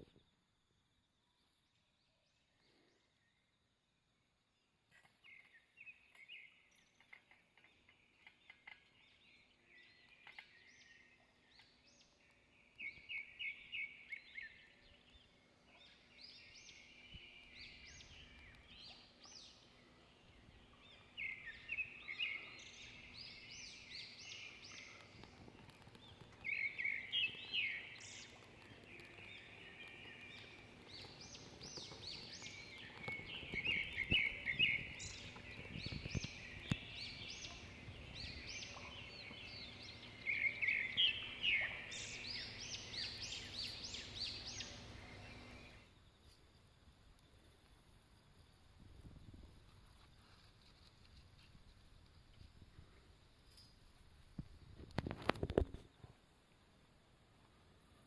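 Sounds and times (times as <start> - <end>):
birds chirping: 4.9 - 46.4
faint clicks: 9.7 - 15.2, 15.8 - 20.0, 20.7 - 46.5, 48.8 - 56.2.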